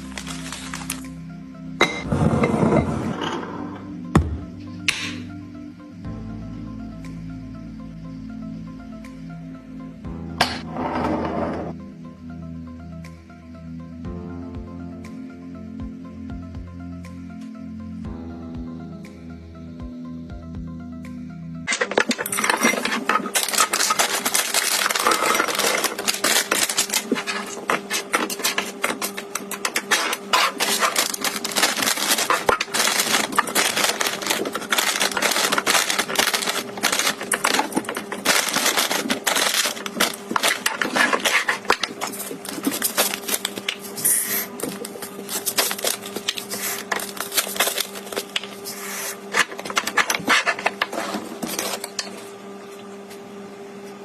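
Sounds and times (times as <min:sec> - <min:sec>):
packaging clicking and rustling: 0:00.0 - 0:01.1, 0:21.7 - 0:52.1.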